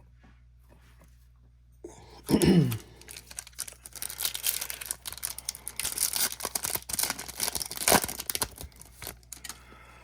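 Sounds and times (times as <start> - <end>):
foil wrapper crinkling and tearing: 2.7 - 9.6.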